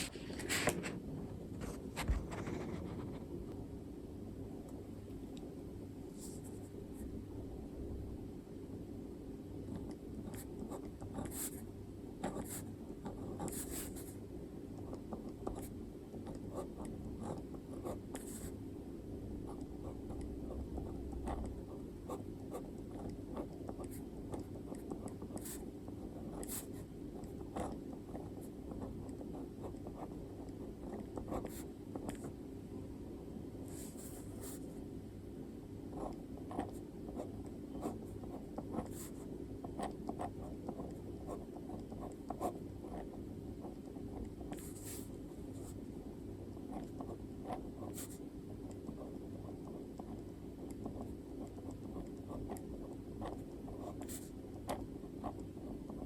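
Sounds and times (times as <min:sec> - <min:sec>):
steady low hum: 0:00.0 - 0:56.0
pen scratching on paper: 0:01.6 - 0:03.3, 0:09.6 - 0:14.2, 0:14.8 - 0:18.6, 0:19.4 - 0:32.4, 0:33.7 - 0:34.7, 0:35.9 - 0:45.8, 0:46.5 - 0:56.0.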